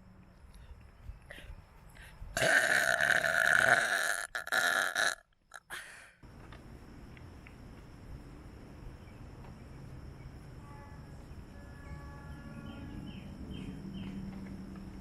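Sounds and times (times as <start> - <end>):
constant high whine: 5.3 - 15.0.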